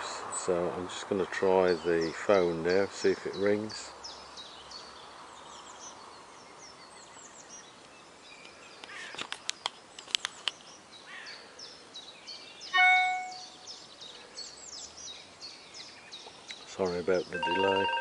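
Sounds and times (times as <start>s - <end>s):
birds chirping: 0.0s - 18.0s
phone handset electronic tone: 12.8s - 13.4s, 17.4s - 18.0s.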